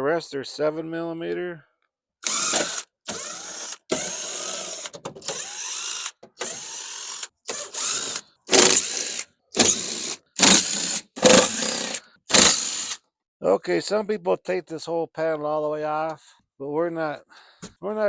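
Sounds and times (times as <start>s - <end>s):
ratchet wrench clicking: 2.3s - 13.0s.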